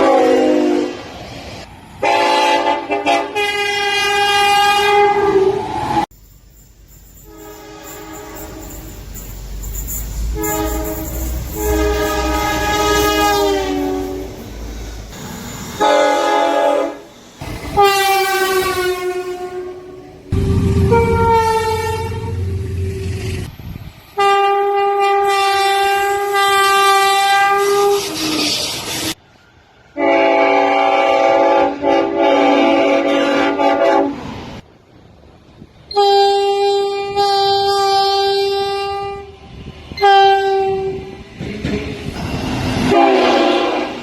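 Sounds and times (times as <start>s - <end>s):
locomotive air horn: 0.0s - 1.1s, 2.0s - 5.7s, 7.2s - 8.9s, 9.9s - 14.5s, 15.8s - 17.1s, 17.7s - 22.6s, 24.2s - 28.5s, 30.0s - 34.3s, 35.9s - 39.3s, 40.0s - 41.1s, 42.8s - 44.0s.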